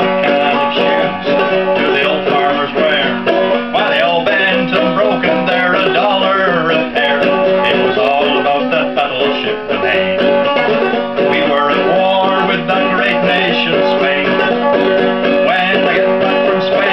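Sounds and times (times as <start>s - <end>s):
banjo plucking: 0.0s - 16.9s.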